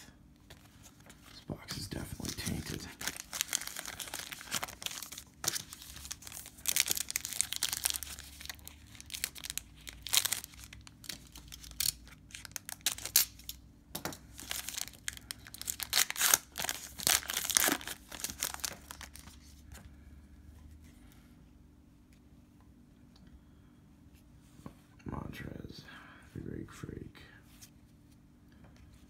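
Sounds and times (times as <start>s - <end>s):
wrapper tearing and crinkling: 2.2s - 13.6s, 14.3s - 19.6s.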